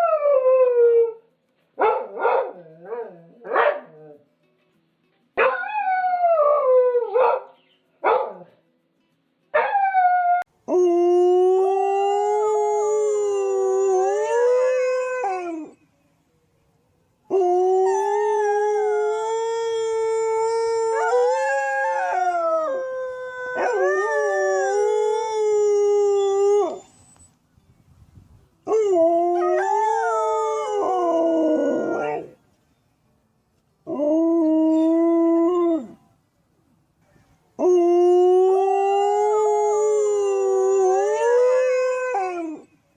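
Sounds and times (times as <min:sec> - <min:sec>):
dog howling: 0:17.3 - 0:26.9, 0:28.8 - 0:32.4.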